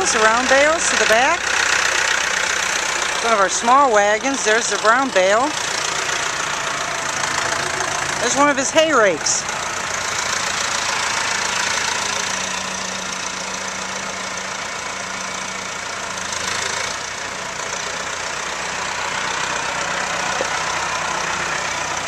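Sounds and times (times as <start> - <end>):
tractor engine idling: 0.0 - 22.0.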